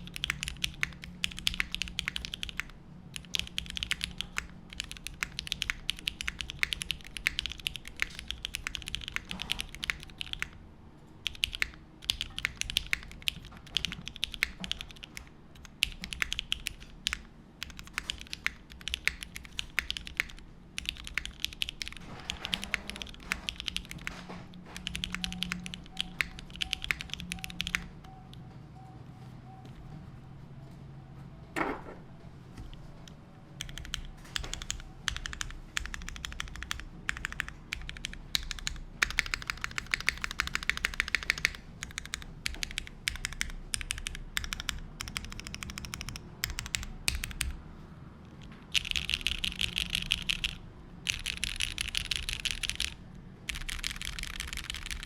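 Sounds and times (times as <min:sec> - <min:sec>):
mechanical keyboard typing: 0:00.0 - 0:10.6, 0:11.2 - 0:28.5, 0:32.6 - 0:55.0.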